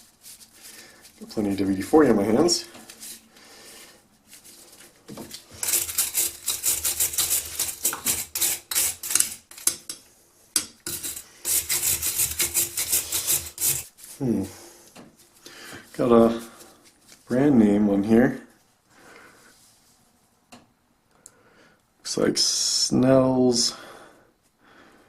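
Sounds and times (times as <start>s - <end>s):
rhythmic scrubbing of metal bit: 10.9s - 13.9s.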